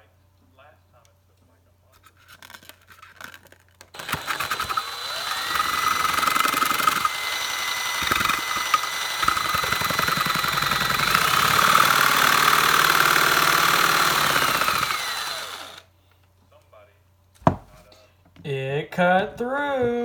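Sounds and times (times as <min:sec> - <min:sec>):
fast rattle: 0:02.7 - 0:15.8
electric drill motor whine: 0:04.0 - 0:15.9.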